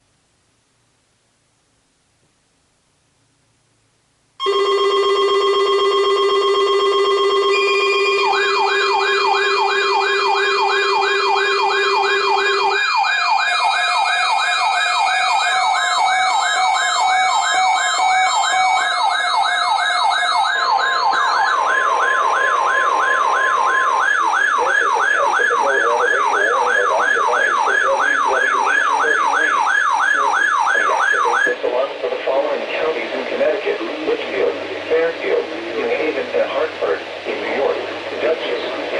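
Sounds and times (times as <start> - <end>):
steady electronic alarm tones: 4.4 - 31.6
warbling siren tones: 4.4 - 31.6.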